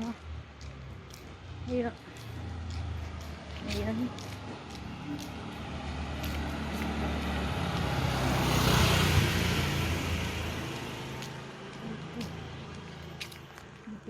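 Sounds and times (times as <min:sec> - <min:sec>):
vehicle driving past: 0:02.3 - 0:13.2.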